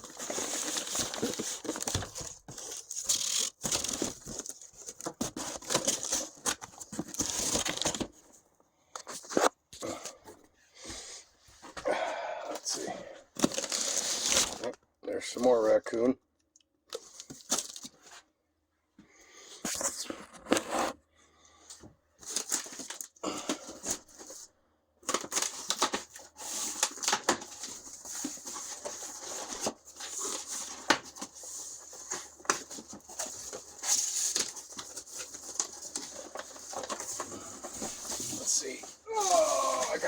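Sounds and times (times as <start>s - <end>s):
packaging rustling and crinkling: 0.0s - 8.4s, 12.6s - 14.8s, 16.9s - 18.2s, 22.2s - 40.0s.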